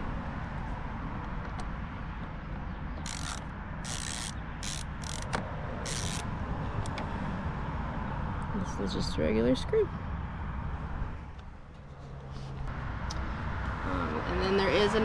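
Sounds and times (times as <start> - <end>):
hand ratchet clicking: 3.0 - 6.2.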